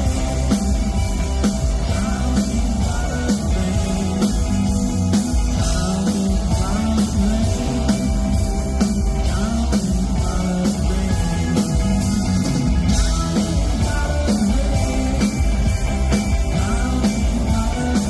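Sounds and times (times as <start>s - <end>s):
electric guitars: 0.0s - 18.0s
repeating bass line: 0.0s - 18.0s
steady drum beat: 0.0s - 18.0s.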